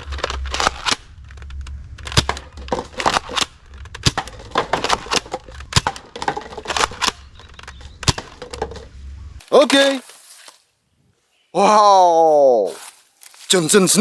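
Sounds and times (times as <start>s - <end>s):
low steady hum: 0.0s - 9.4s.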